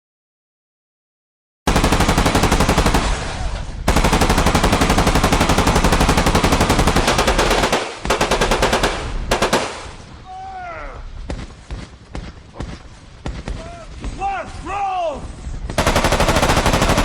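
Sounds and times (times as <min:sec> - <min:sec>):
machine-gun fire: 0:01.7 - 0:10.0, 0:15.8 - 0:17.0.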